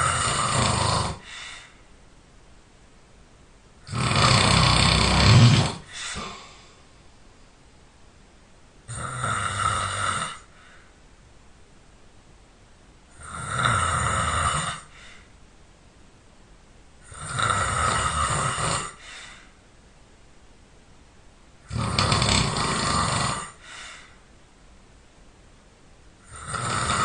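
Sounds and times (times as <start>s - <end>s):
person snoring loudly: 0.0s - 1.7s, 3.8s - 6.6s, 8.9s - 10.6s, 13.1s - 15.3s, 17.0s - 19.4s, 21.7s - 23.7s, 26.2s - 27.0s.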